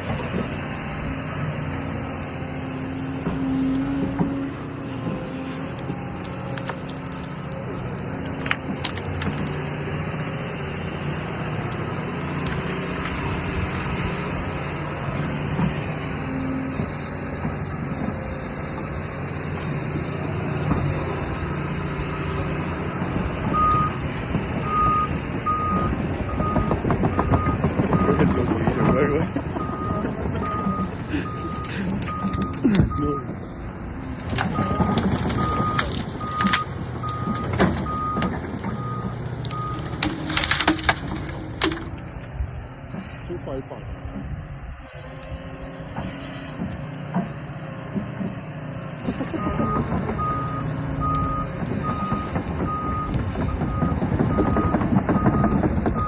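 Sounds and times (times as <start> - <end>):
excavator engine running: 0.0 - 56.0
branches cracking and snapping: 5.7 - 10.4, 11.5 - 14.4, 33.4 - 42.3
branches snapping: 5.7 - 10.4, 39.4 - 42.1
excavator alarm beeping: 22.9 - 24.0, 24.6 - 33.3, 34.5 - 39.9, 49.3 - 56.0.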